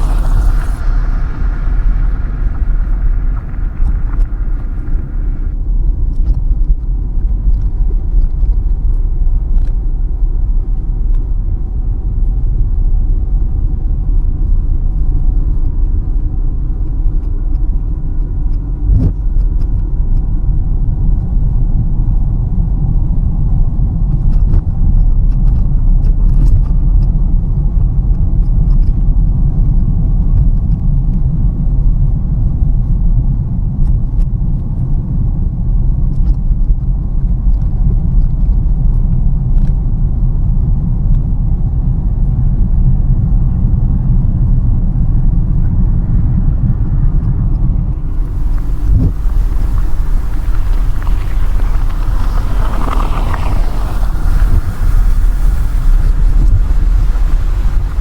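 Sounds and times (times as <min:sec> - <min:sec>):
car road and engine rumble: 0:00.0 - 0:05.6, 0:45.8 - 0:58.0.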